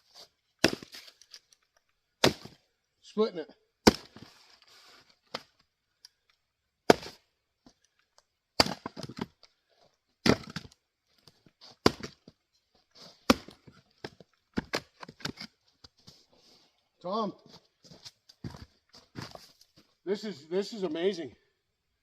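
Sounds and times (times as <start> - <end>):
axe chopping firewood: 0.6 - 1.2, 2.2 - 2.6, 3.8 - 4.3, 6.8 - 7.3, 8.5 - 9.4, 10.2 - 10.8, 11.7 - 12.4, 13.2 - 15.5
wood knocking and cracking: 8.6 - 9.5, 10.2 - 12.4, 13.3 - 15.5.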